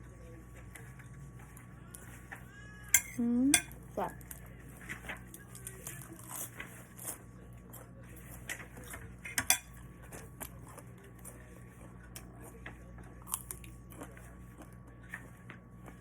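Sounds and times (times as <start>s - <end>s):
utensils and dishes clinking: 2.9s - 7.2s, 8.4s - 9.9s.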